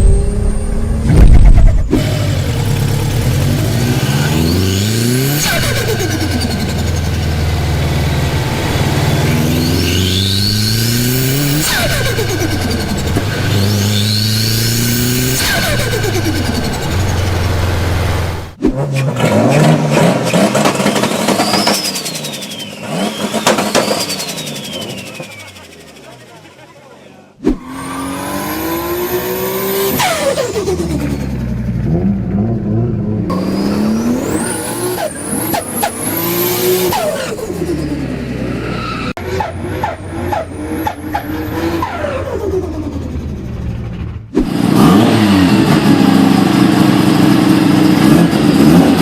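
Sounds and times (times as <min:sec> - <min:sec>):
loud blast: 0:00.0 - 0:03.2
car engine accelerating hard: 0:00.0 - 0:26.9, 0:27.6 - 0:49.0
turbo whistle: 0:04.3 - 0:17.3, 0:20.8 - 0:26.1.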